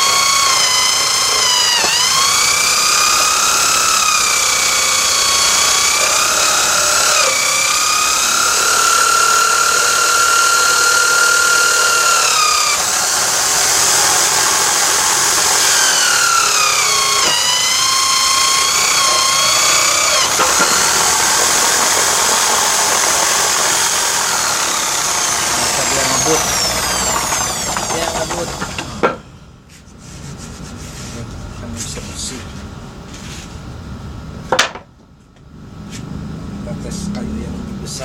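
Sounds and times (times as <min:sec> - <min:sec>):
electric drill motor whining: 0:00.0 - 0:29.4.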